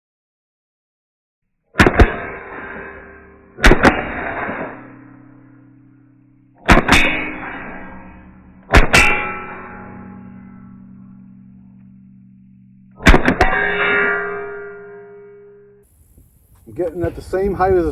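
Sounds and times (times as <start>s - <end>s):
rifle shots: 1.8s - 2.2s, 3.6s - 5.4s, 6.6s - 8.0s, 13.0s - 13.5s.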